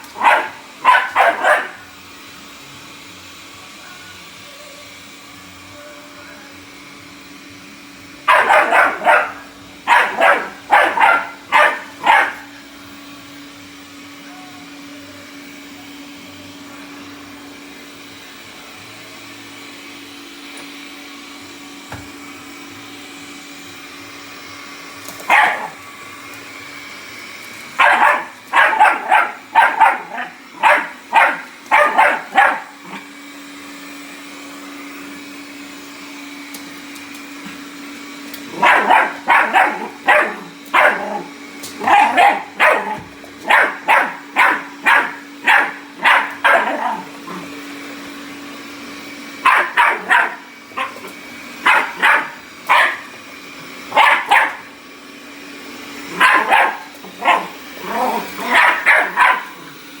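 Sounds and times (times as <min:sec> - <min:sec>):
puppy barking: 0:00.0 - 0:01.9, 0:08.2 - 0:12.6, 0:25.2 - 0:25.8, 0:27.8 - 0:33.1, 0:38.5 - 0:47.5, 0:49.4 - 0:53.2, 0:53.8 - 0:54.7, 0:56.1 - 0:59.8
robot vacuum motor humming: 0:00.0 - 1:00.0.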